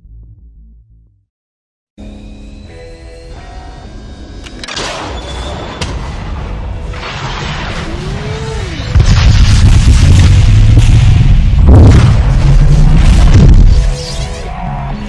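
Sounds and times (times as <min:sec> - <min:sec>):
deep rumbling boom: 0:08.9 - 0:13.9.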